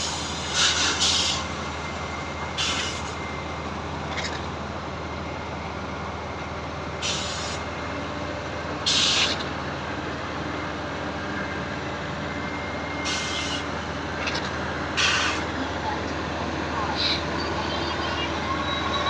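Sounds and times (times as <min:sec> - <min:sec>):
hiss bursts: 0:00.0 - 0:01.5
diesel engine running: 0:00.0 - 0:19.0.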